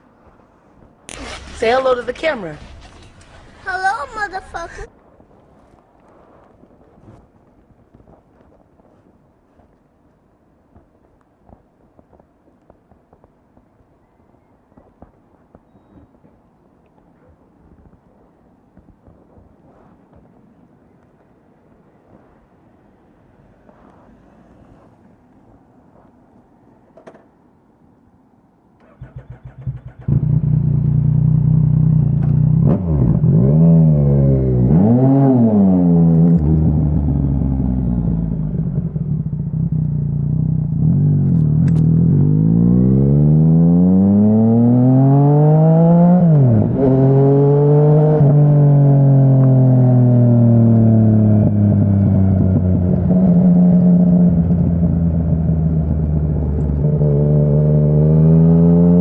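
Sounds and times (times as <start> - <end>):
motorcycle engine revving: 1.1 - 4.9, 28.8 - 59.0.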